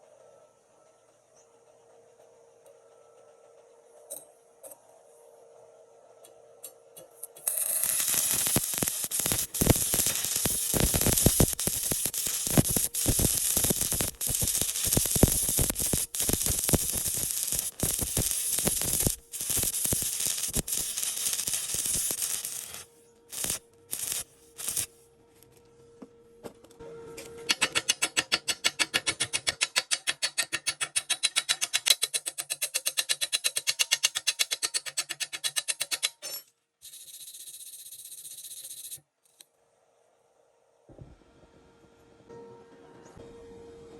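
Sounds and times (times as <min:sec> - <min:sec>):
welding arc crackling: 0:07.3 - 0:24.9.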